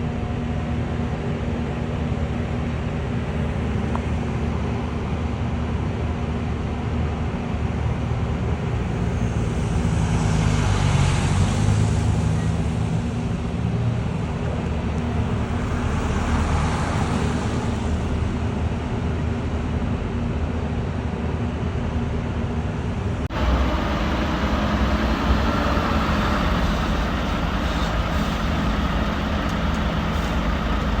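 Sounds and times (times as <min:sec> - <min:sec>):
heavy machinery engine running: 0:23.1 - 0:31.0.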